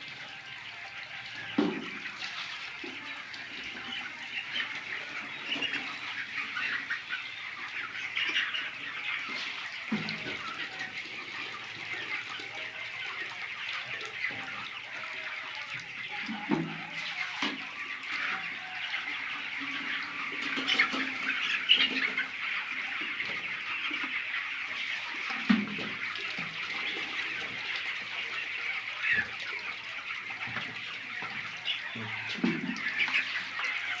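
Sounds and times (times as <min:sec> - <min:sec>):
flock of chickens clucking: 0:00.0 - 0:34.0.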